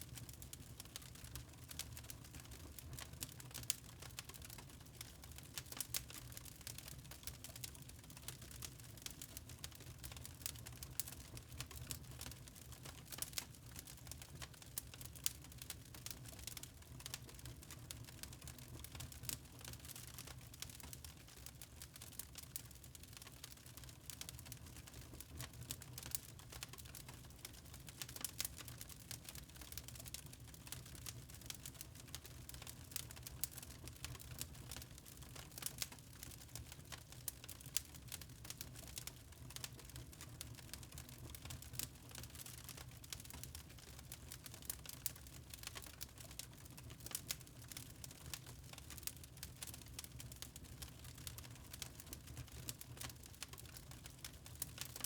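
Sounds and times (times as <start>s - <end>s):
fire crackling and popping: 0.0s - 55.0s.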